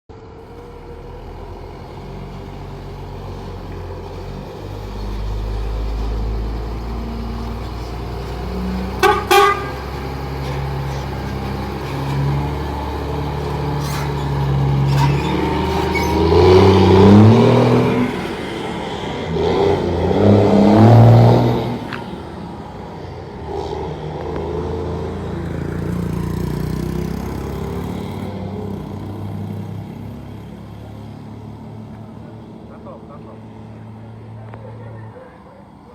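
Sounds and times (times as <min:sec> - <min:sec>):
diesel truck engine revving: 0:00.1 - 0:35.9
truck horn toots: 0:08.7 - 0:10.8.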